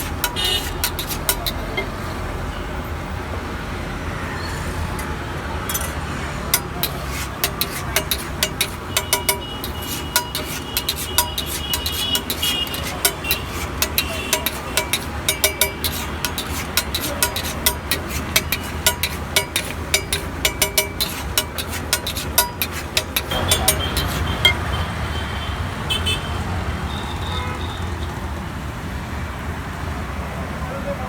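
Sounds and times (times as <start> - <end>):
metal spatula clanking on griddle: 0.0 - 2.1, 5.7 - 24.8
street traffic hum: 0.0 - 31.0.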